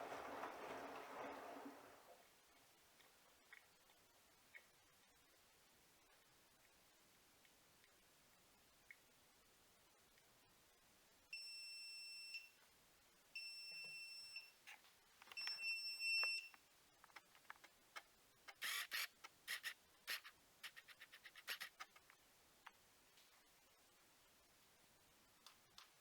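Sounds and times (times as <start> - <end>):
washing machine beeping: 0.0 - 2.1, 11.3 - 12.6, 13.4 - 14.6, 15.3 - 16.6.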